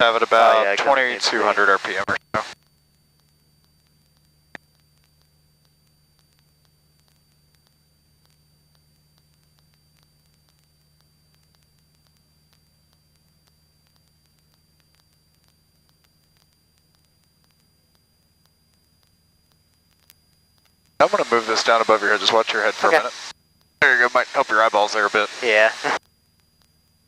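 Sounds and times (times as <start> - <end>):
faint steady low hum: 0.0 - 27.0.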